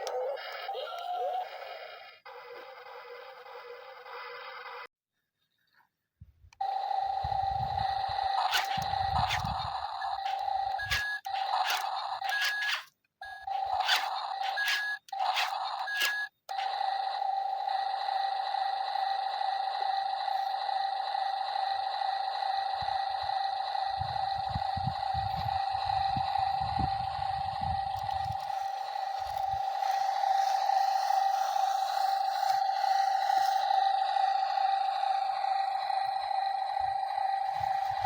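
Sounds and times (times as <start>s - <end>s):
small electric motor whining: 0.0s - 4.9s, 6.6s - 38.0s.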